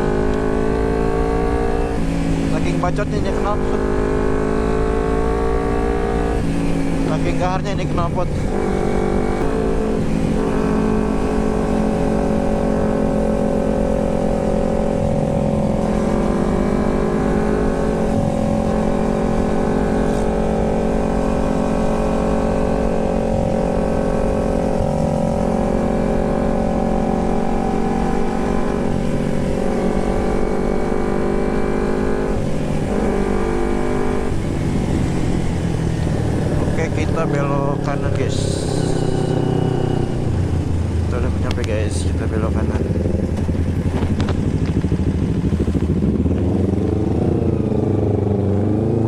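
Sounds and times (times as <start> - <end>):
motorcycle engine running: 0.0 - 49.0.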